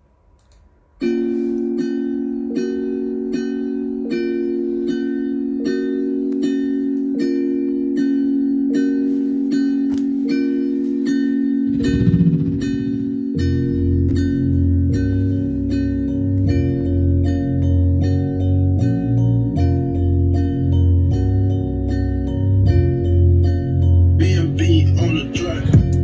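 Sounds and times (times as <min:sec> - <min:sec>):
sustained synth chord: 0:01.0 - 0:24.2
bass line: 0:11.1 - 0:26.0.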